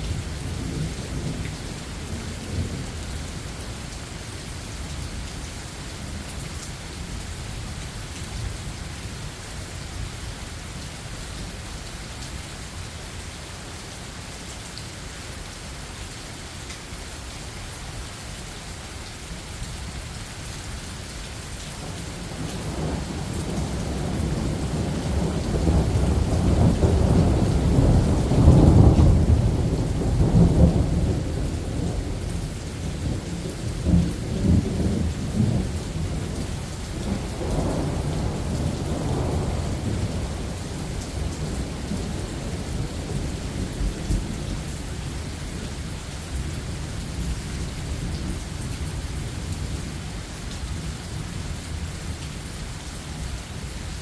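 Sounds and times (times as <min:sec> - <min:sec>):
rain falling on forest: 0:00.0 - 0:54.0
thunder rumbling: 0:22.3 - 0:44.6.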